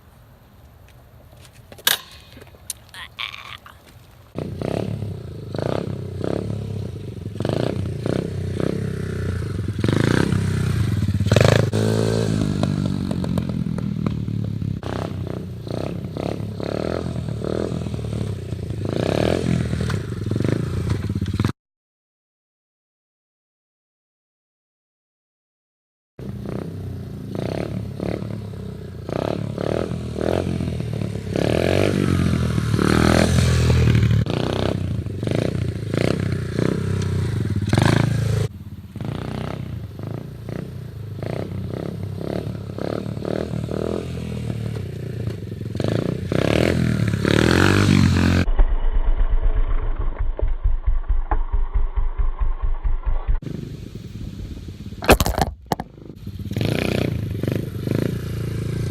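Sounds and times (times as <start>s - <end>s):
pit bike engine revving: 4.3s - 21.5s, 26.2s - 48.6s, 55.0s - 58.9s
clatter and scraping: 48.4s - 53.4s
muffled low pulsing: 48.5s - 53.4s.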